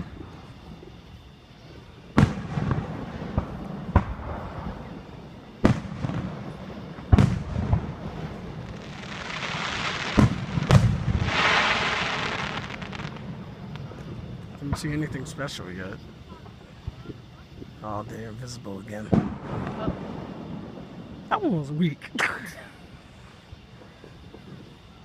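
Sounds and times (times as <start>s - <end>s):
fireworks crackling: 0.0s - 25.0s
firework bangs: 2.1s - 15.4s, 18.9s - 21.3s.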